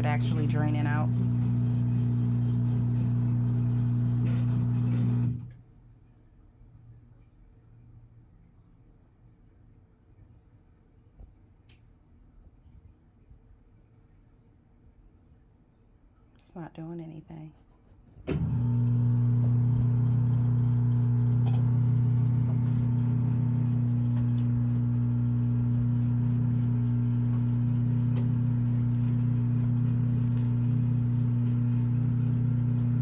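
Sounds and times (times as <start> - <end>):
drain pump humming: 0.0 - 5.5, 18.3 - 33.0.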